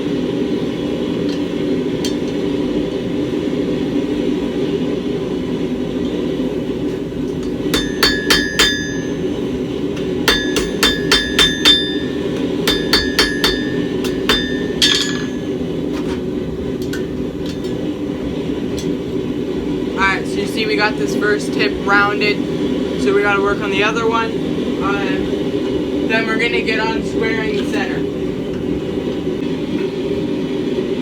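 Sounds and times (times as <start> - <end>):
low hum: 6.3 - 21.1
hammer striking steel on anvil: 7.4 - 15.8.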